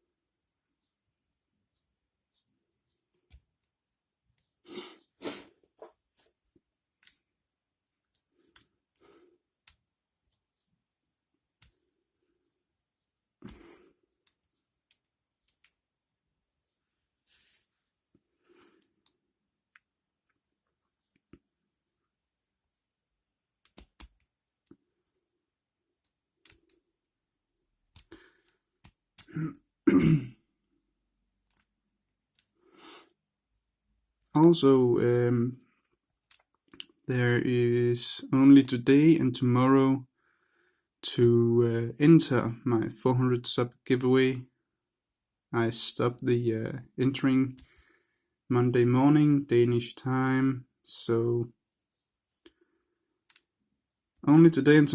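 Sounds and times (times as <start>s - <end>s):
person clearing throat: 29.3s - 30.4s.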